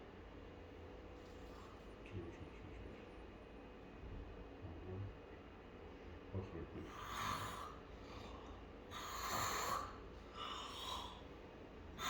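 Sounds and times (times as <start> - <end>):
man snoring: 9.0 - 11.2.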